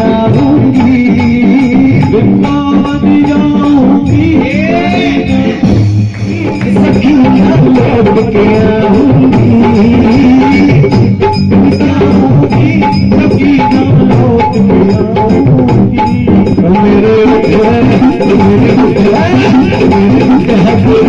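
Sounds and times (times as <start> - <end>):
devotional music: 0.0 - 21.0
drums and hand percussion: 0.0 - 21.0.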